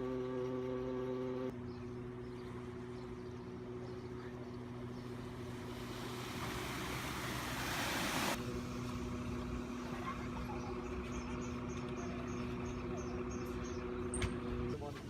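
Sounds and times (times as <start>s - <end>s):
vehicle engine humming: 0.0s - 15.0s
rush of water spray: 5.3s - 8.4s.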